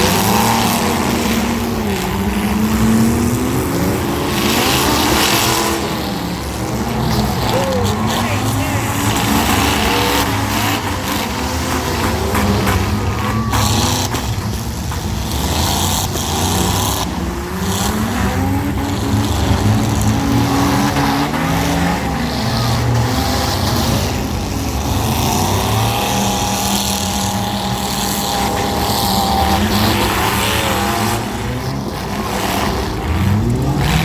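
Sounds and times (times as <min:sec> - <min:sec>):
car engines revving: 0:00.0 - 0:34.0
cars colliding bangs: 0:04.2 - 0:17.4.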